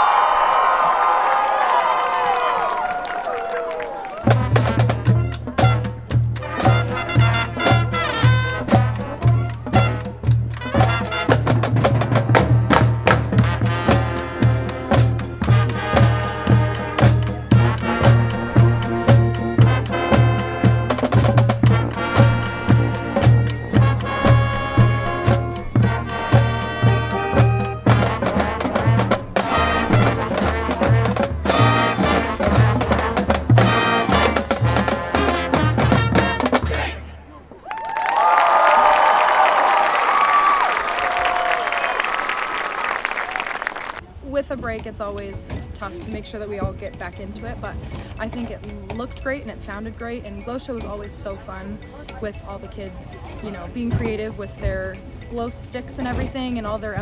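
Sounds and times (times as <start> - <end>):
marching band music: 4.2 - 37.3.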